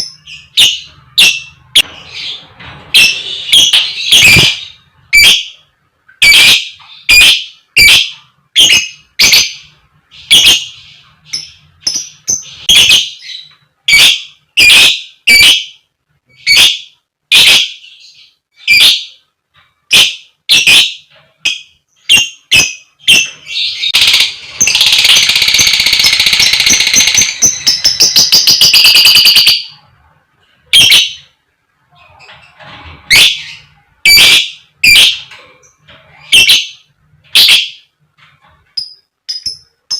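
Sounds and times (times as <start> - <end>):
lovebird harsh calls: 3.0 - 5.5, 33.1 - 35.2, 36.2 - 37.8.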